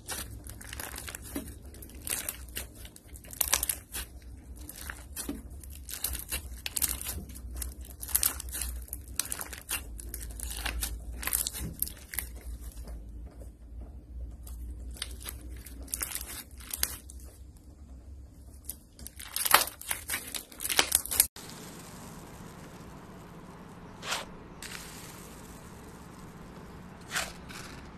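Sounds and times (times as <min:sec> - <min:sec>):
slime kneaded with sticky crackles: 0:00.0 - 0:17.8, 0:18.4 - 0:21.4.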